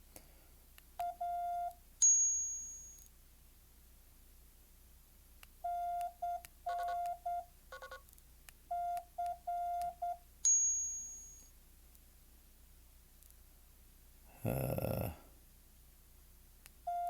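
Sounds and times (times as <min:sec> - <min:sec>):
high bright chime: 0:02.0 - 0:03.1, 0:10.5 - 0:11.5
morse code beeps: 0:05.6 - 0:08.0, 0:08.7 - 0:10.2.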